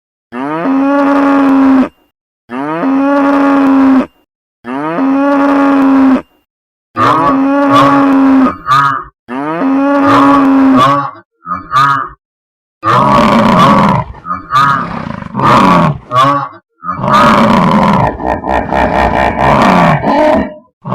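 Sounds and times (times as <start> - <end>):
cow mooing: 0.3 - 6.4, 7.0 - 12.2, 12.8 - 18.2.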